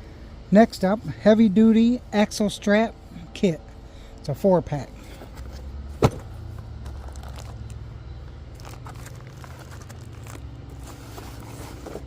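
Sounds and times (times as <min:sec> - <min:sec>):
steady low hum: 0:00.0 - 0:12.0
plastic packaging crinkling: 0:06.9 - 0:07.8, 0:08.5 - 0:11.8.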